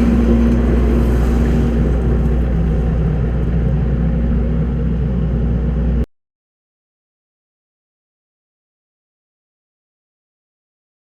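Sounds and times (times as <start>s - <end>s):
diesel engine running: 0.0s - 6.1s.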